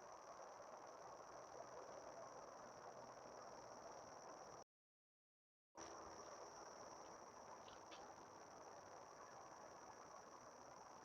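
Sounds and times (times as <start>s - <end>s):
crickets droning: 0.0s - 4.6s, 5.8s - 11.0s.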